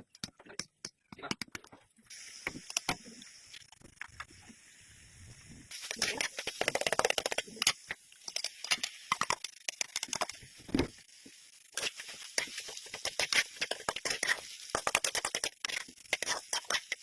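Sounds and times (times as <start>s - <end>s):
kitchen crackling and rustling: 5.7s - 17.0s.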